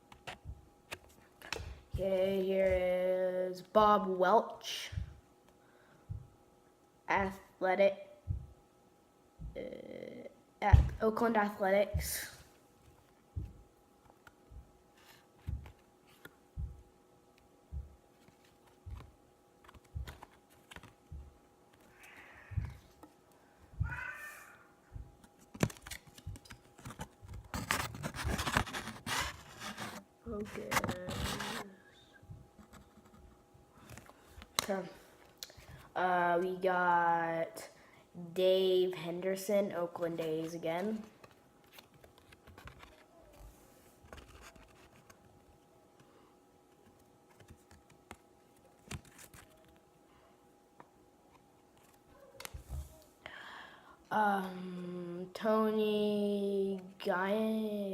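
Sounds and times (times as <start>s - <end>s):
cards flipping and rustling: 0.0s - 1.8s, 14.0s - 16.7s, 18.1s - 23.2s, 25.2s - 31.7s, 33.8s - 35.8s, 40.3s - 45.4s, 46.7s - 49.8s, 51.3s - 53.0s
low steady hum: 0.0s - 57.9s.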